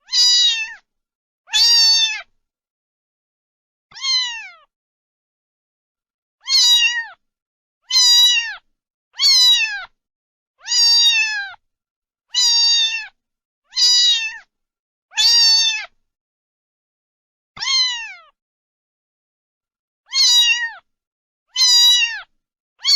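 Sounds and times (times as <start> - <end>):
cat meowing: 0.0 - 0.9, 1.5 - 2.3, 3.9 - 4.7, 6.4 - 7.2, 7.8 - 10.0, 10.6 - 11.6, 12.3 - 14.5, 15.1 - 16.0, 17.6 - 18.4, 20.1 - 20.9, 21.5 - 22.9.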